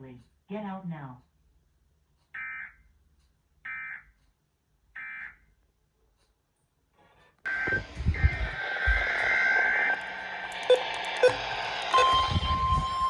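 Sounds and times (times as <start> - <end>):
digital data bursts: 7.5 - 13.0
radio static hiss: 7.5 - 13.0
steady data tone: 7.5 - 13.0.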